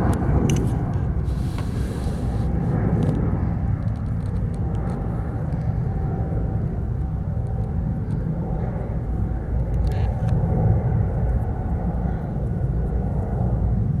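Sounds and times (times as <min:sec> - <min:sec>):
low outdoor rumble: 0:00.0 - 0:14.0.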